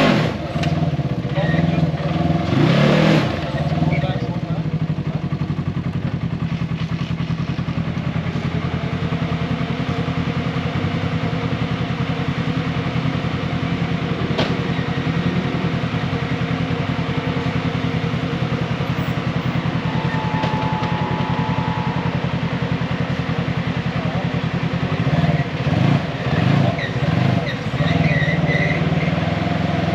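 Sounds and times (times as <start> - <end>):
vehicle engine running at low revs: 0.0 - 29.9.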